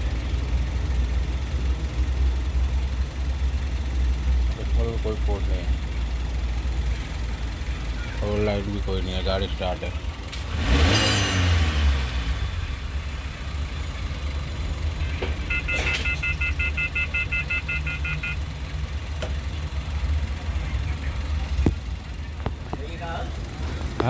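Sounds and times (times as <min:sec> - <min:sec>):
van engine idling: 0:00.0 - 0:24.0
rapid electronic beeping: 0:15.5 - 0:18.5.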